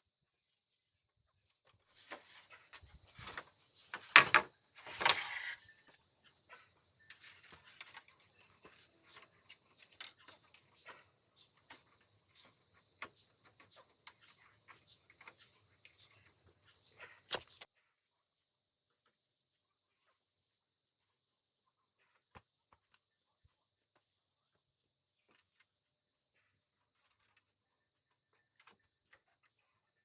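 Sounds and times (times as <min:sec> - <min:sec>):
rustling: 0:01.9 - 0:06.0
scraping thuds: 0:02.0 - 0:05.8.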